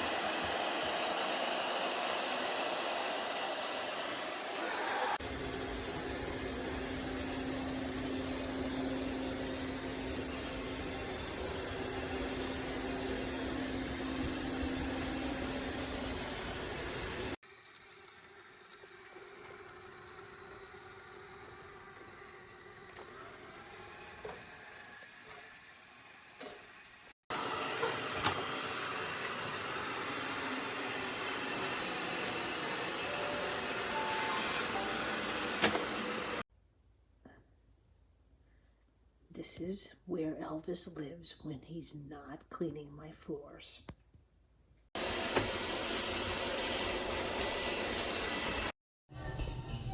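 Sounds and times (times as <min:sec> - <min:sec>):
robot vacuum whirring: 0:00.0 - 0:17.4, 0:27.3 - 0:36.4.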